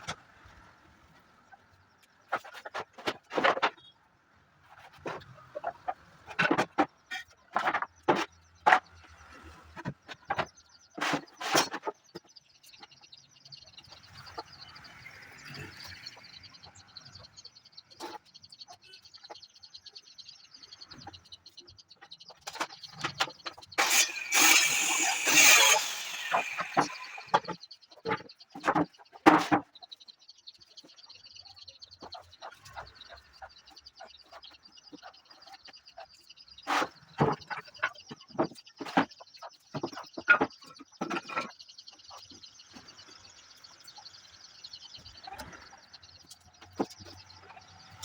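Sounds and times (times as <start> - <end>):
harsh rasping noise: 23.8 - 27.5.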